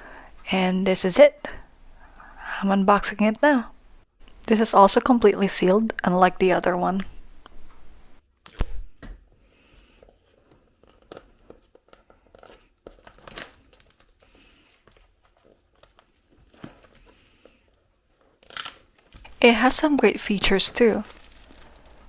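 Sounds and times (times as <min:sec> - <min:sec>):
packaging tearing and crinkling: 0:10.8 - 0:17.4, 0:18.1 - 0:22.0.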